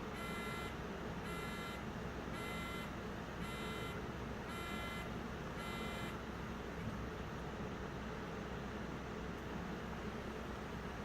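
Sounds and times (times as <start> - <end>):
electronic alarm beeps: 0.2 - 1.8, 2.4 - 6.2.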